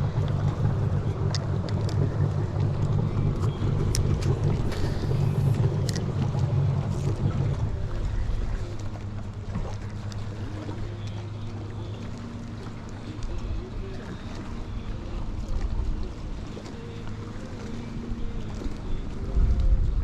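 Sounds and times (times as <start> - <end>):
boat motor humming: 0.0 - 20.0
water noise: 0.0 - 20.0
wind: 0.0 - 20.0.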